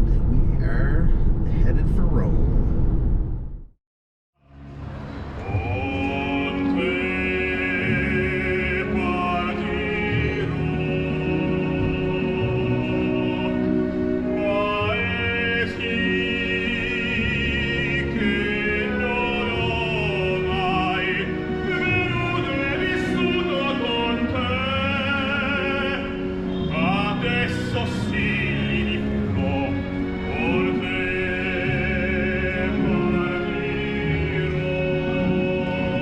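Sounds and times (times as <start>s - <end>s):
musical accompaniment: 4.4s - 36.0s
operatic singing with vibrato: 4.4s - 36.0s.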